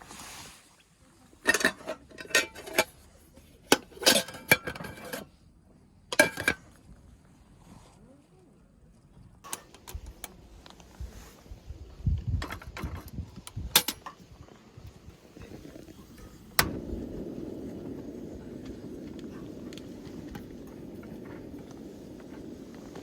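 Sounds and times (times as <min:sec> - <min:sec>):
metal cookware clinking: 0:01.4 - 0:03.0, 0:03.7 - 0:05.2, 0:06.2 - 0:06.6.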